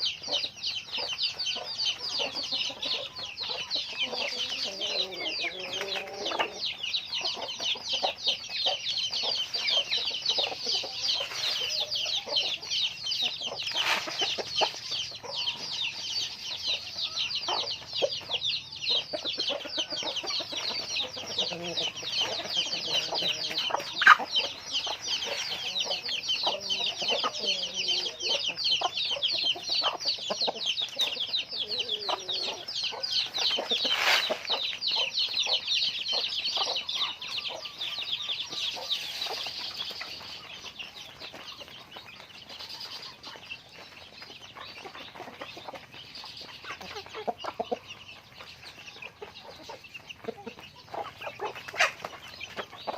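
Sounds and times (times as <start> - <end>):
chickens clucking: 0.0 - 52.9
chickens peeping: 0.0 - 52.9.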